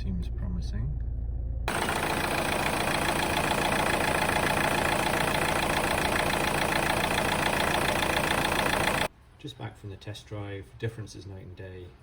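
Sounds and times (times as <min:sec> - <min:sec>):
diesel engine idling: 0:01.2 - 0:09.1.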